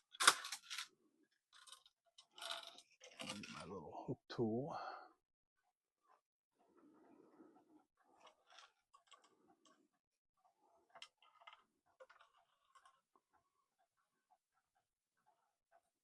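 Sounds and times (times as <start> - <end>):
cuckoo clock chain clicking and rattling: 1.5 - 3.6.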